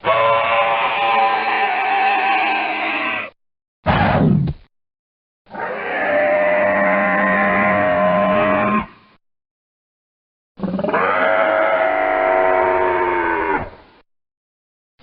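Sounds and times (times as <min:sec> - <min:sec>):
dinosaur roar: 0:00.0 - 0:03.4, 0:05.5 - 0:09.0, 0:10.6 - 0:13.8.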